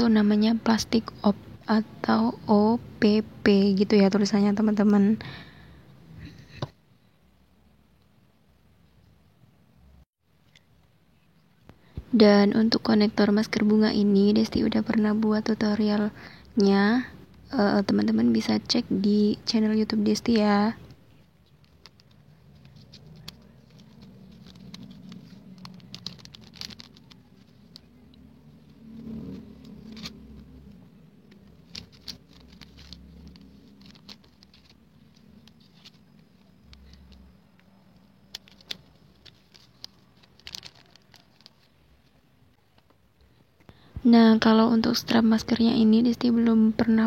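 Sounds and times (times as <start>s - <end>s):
faint low hum: 0.0s - 47.0s
plastic bag rustling: 21.5s - 28.1s, 31.2s - 37.3s, 38.2s - 42.1s.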